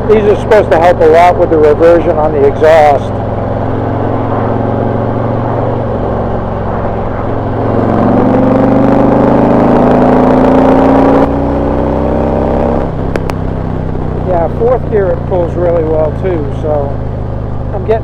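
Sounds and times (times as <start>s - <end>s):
motorcycle engine accelerating: 0.0s - 18.0s.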